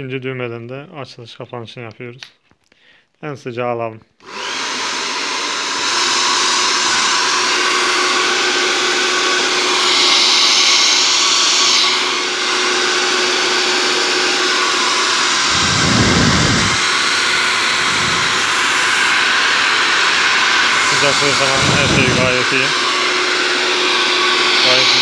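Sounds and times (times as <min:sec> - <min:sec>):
hair dryer air rush: 0:04.2 - 0:25.0
steady hum: 0:15.4 - 0:18.9.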